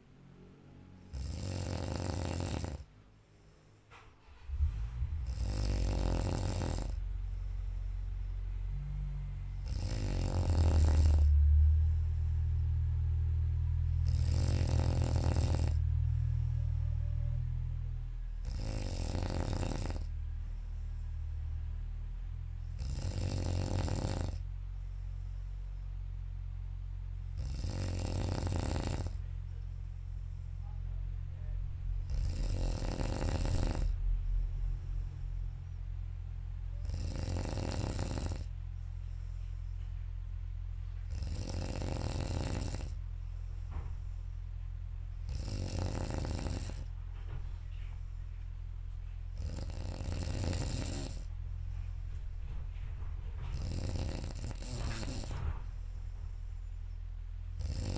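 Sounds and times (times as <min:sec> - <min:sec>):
steady low hum: 0:00.0 - 0:57.9
person snoring loudly: 0:01.1 - 0:02.9, 0:04.6 - 0:07.0, 0:08.7 - 0:12.6, 0:13.9 - 0:17.7, 0:18.4 - 0:21.3, 0:22.6 - 0:24.4, 0:27.4 - 0:29.2, 0:32.0 - 0:34.0, 0:36.8 - 0:38.5, 0:41.1 - 0:43.0, 0:45.2 - 0:46.9, 0:49.4 - 0:51.3, 0:53.5 - 0:55.4, 0:57.6 - 0:57.9.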